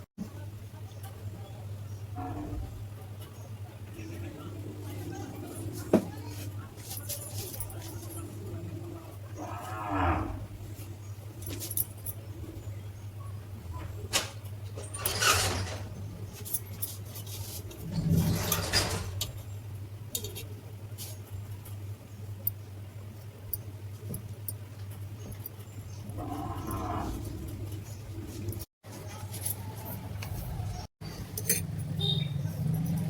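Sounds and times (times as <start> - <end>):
metal parts clicking and clinking: 14.2 - 19.4, 31.3 - 33.0.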